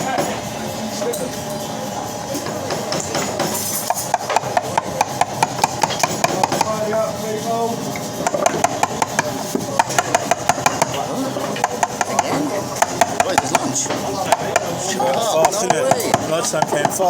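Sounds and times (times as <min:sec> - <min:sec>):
mallet tapping chisel into wood: 0:04.0 - 0:06.8, 0:08.3 - 0:11.0, 0:11.6 - 0:13.7.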